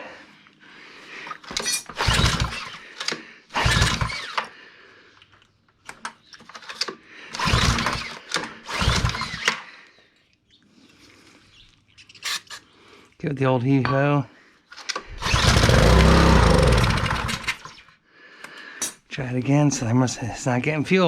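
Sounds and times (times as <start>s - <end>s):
recoil starter pulls cranking engine: 1.3s - 4.5s, 6.5s - 9.6s, 14.9s - 17.8s.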